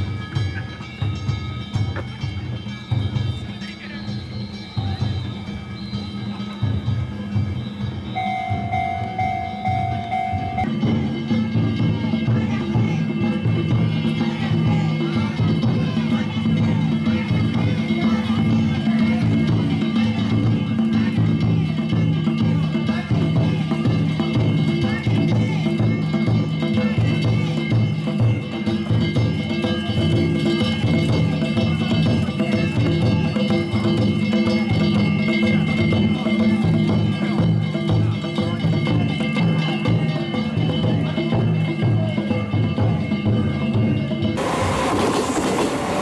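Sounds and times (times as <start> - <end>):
hand gongs ringing: 0.0 - 10.9
taiko drums beating: 4.8 - 11.8.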